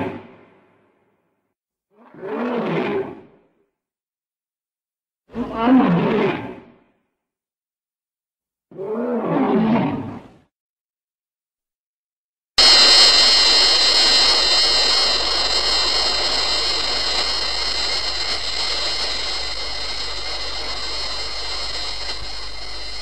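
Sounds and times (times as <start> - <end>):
high monster whine: 12.6 - 23.0
noisy rush: 12.6 - 23.0.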